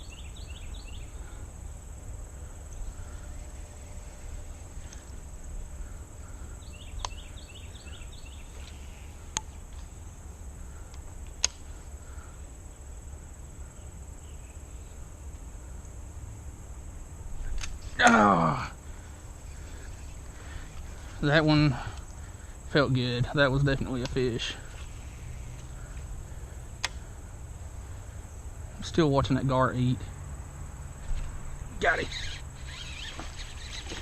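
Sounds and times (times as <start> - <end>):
high-pitched insect drone: 0.0 - 34.0
sharp clicks: 10.9 - 11.7, 26.8 - 27.1
quick chirps: 31.8 - 34.0.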